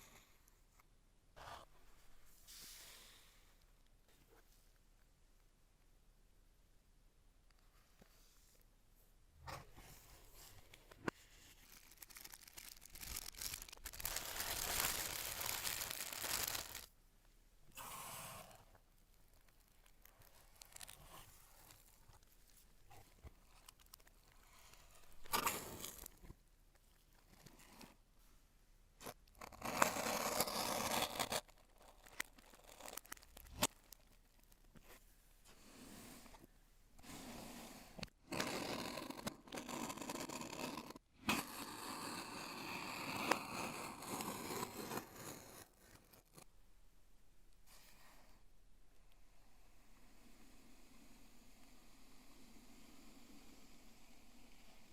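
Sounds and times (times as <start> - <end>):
packaging rustling: 11.2 - 16.9
packaging crinkling and tearing: 11.4 - 16.9, 30.9 - 34.7.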